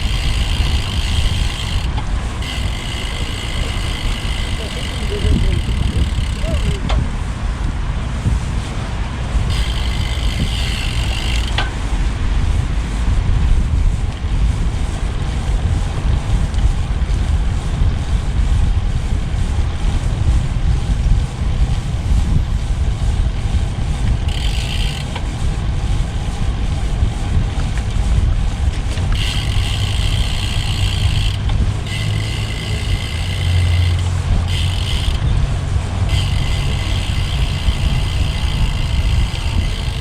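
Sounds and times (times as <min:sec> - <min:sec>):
bike road rumble: 0:00.0 - 0:40.0
wind buffeting microphone: 0:00.0 - 0:40.0.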